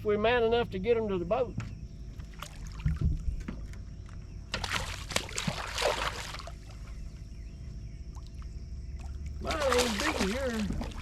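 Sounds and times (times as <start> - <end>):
low steady rumble: 0.0 - 11.0
water splashing and sloshing: 1.6 - 11.0.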